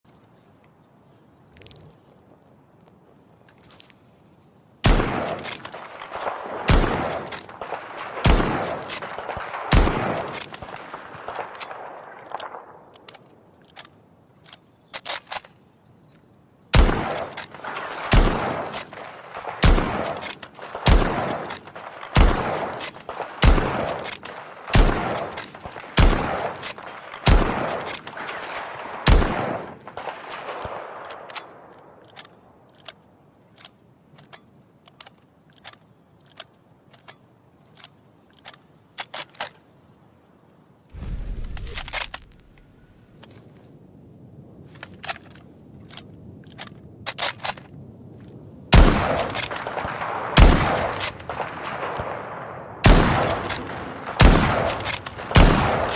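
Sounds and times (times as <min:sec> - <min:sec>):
rifle shots echoing: 0:04.8 - 0:13.0, 0:16.7 - 0:32.1, 0:48.7 - 0:55.9
rifle bolt clicks: 0:10.2 - 0:15.6, 0:30.6 - 0:39.6, 0:41.4 - 0:43.4, 0:44.7 - 0:47.7, 0:52.9 - 0:55.9.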